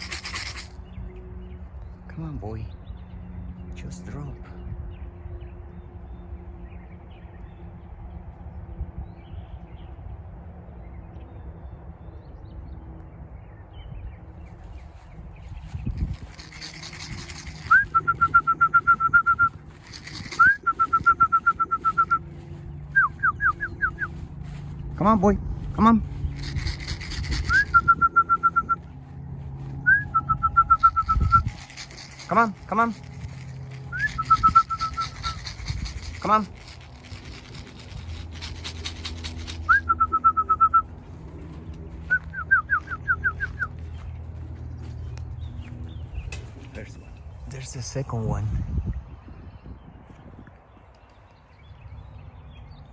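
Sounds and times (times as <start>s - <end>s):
quick rattle: 0.0s - 0.8s, 15.6s - 22.2s, 26.1s - 28.7s, 30.6s - 40.2s
bird singing whistled notes: 16.6s - 24.3s, 27.2s - 28.9s, 29.8s - 31.8s, 33.9s - 35.8s, 39.5s - 40.9s, 42.0s - 44.0s.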